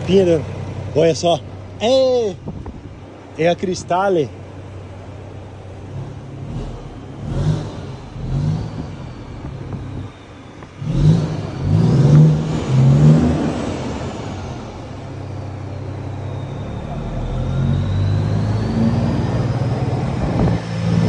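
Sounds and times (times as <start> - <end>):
truck engine revving: 4.8 - 21.0.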